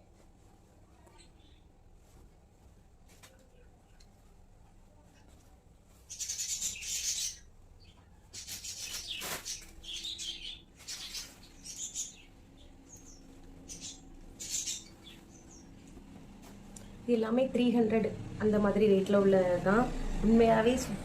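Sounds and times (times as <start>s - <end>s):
cage birds chirping: 3.3s - 18.6s.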